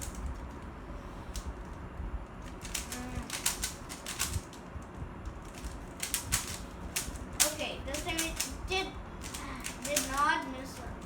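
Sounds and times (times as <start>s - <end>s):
puzzle cube clacking clicks: 2.6s - 4.4s.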